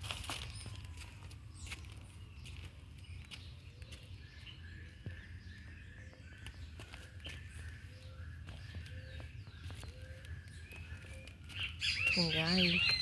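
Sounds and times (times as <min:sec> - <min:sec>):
bird calling: 0:03.8 - 0:13.0.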